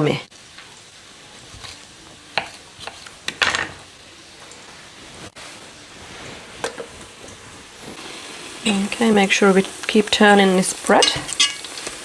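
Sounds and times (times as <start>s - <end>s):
faint steady hiss: 0.0s - 12.0s
kitchenware knocks and clinks: 3.3s - 3.8s.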